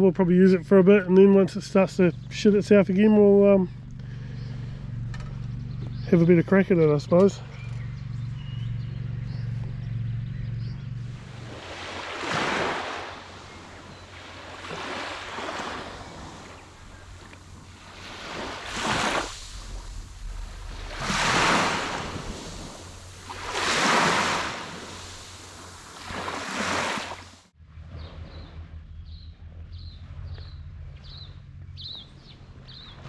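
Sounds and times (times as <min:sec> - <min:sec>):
low steady hum: 0:00.0 - 0:11.8, 0:12.9 - 0:26.4
whooshes of noise: 0:11.1 - 0:27.5.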